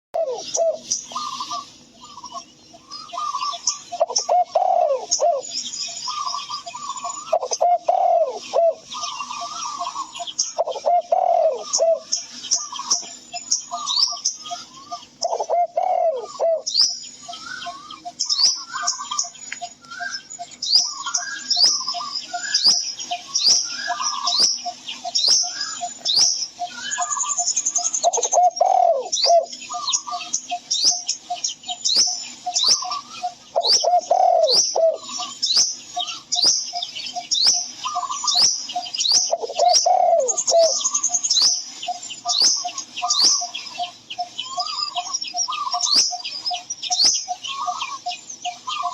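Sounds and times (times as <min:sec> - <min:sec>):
dove cooing: 0:00.2 - 0:31.8, 0:32.4 - 0:48.9
high repeated bird chirps: 0:00.5 - 0:08.1, 0:08.8 - 0:15.5, 0:16.6 - 0:48.9.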